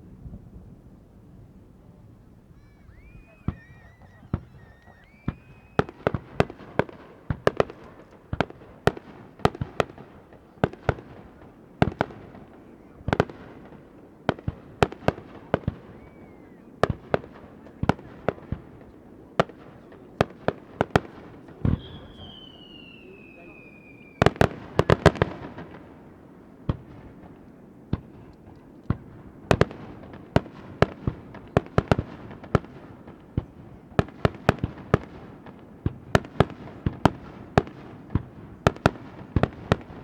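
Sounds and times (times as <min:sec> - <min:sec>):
high whistling tones: 0:02.5 - 0:06.4, 0:15.9 - 0:16.7
fireworks shells bursting: 0:02.6 - 0:06.8.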